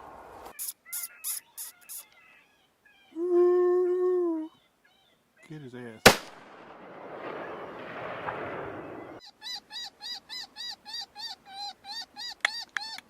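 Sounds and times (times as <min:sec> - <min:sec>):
high squealing distress call: 0:00.5 - 0:02.1
hiss: 0:00.6 - 0:02.0.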